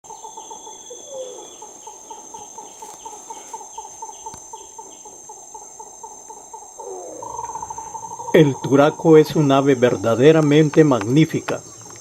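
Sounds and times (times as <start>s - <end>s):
steady high-pitched whine: 0.1s - 12.0s
bird calling in throaty notes: 6.8s - 10.7s.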